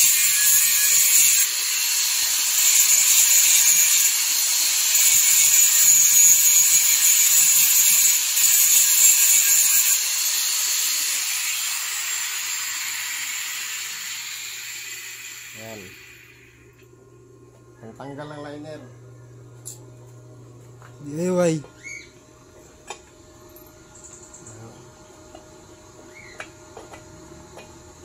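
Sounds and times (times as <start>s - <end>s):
power tool whining: 0.0s - 16.6s.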